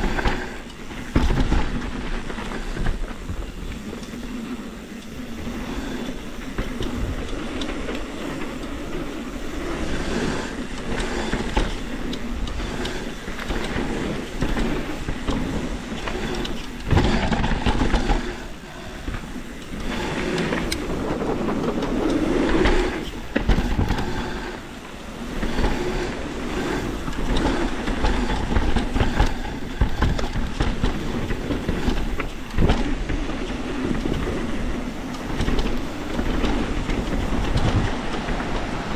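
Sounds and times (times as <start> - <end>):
bike rattling: 0.0 - 38.9
bike tyres rolling over rocky dirt: 0.0 - 38.9.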